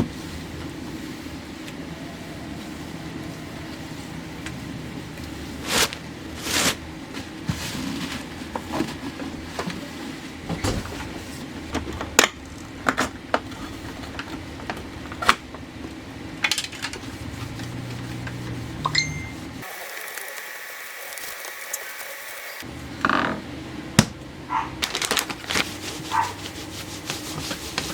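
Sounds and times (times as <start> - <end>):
steady low hum: 0.0 - 19.6.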